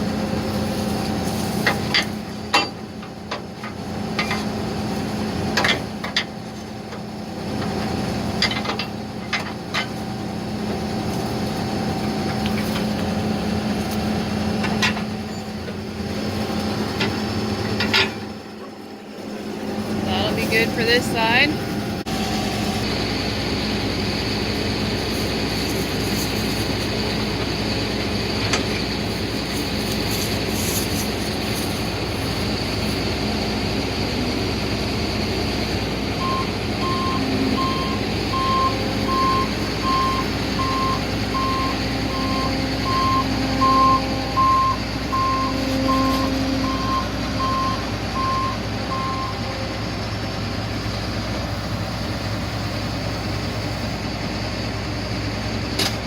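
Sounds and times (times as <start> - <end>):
combine diesel engine running: 0.0 - 56.0
backup alarm beeping: 36.2 - 49.9.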